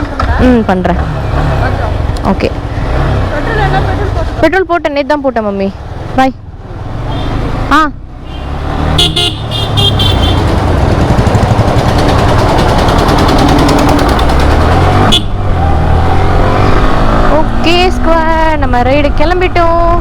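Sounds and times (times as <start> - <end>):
motorcycle engine: 0.0 - 4.7, 5.5 - 20.0
horn beep: 8.3 - 10.5.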